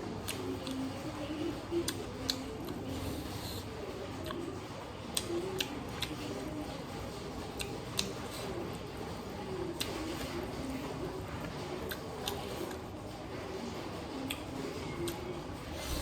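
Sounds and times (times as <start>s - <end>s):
close chewing: 1.7s - 6.5s, 7.1s - 12.9s, 14.3s - 16.0s.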